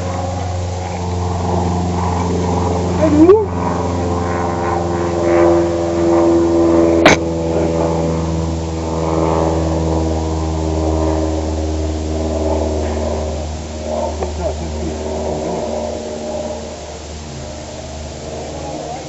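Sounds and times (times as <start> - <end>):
low mechanical hum: 0.0 - 19.0
sharp crack: 7.0 - 7.3.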